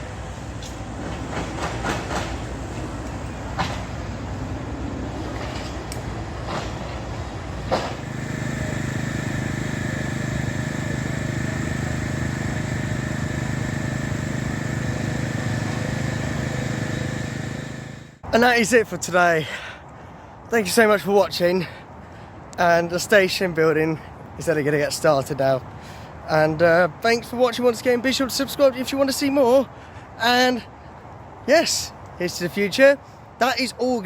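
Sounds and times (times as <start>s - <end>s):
vehicle engine running steadily: 7.3s - 18.2s.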